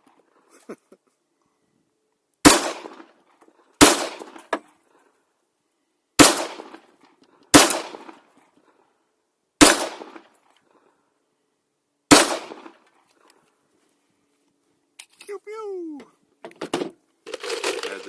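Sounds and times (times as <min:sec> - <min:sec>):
pistol shots: 0:02.5 - 0:03.0, 0:03.8 - 0:04.4, 0:06.2 - 0:06.8, 0:07.6 - 0:08.2, 0:09.6 - 0:10.2, 0:12.1 - 0:12.7.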